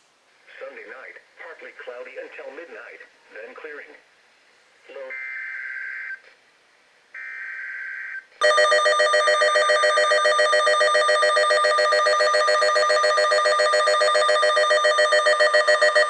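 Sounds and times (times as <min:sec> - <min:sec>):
rapidly pulsing electronic alarm beep: 0:08.4 - 0:16.0.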